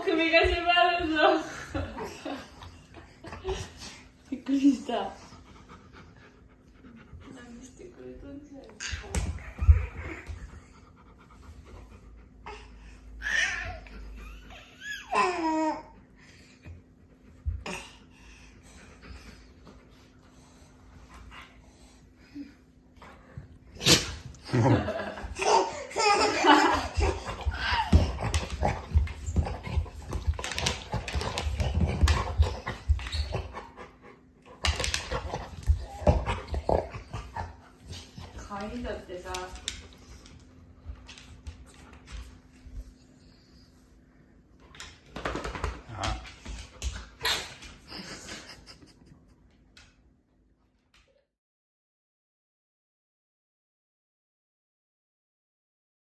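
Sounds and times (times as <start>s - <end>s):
dog sneezing: 23.7s - 24.4s, 47.2s - 47.7s
person laughing: 24.4s - 28.0s, 47.9s - 49.5s.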